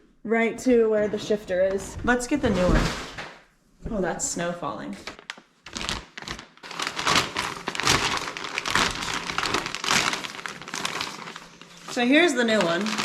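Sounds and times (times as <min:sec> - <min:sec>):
plastic packaging crinkling: 0:05.0 - 0:13.0.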